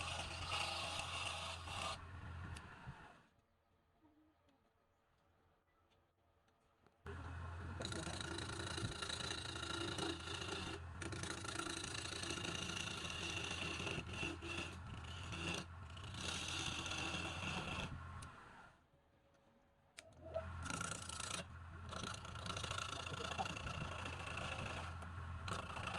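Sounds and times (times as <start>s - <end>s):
lathe motor hum: 0.0s - 3.1s, 7.1s - 18.7s, 20.4s - 25.9s
tool scraping spinning wood: 0.0s - 3.1s, 7.5s - 18.6s, 20.2s - 25.9s.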